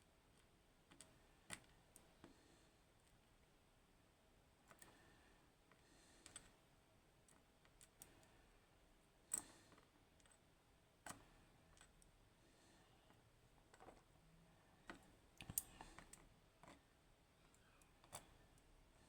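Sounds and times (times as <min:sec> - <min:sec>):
small metal clicks and taps: 0:06.2 - 0:06.6, 0:14.8 - 0:18.7.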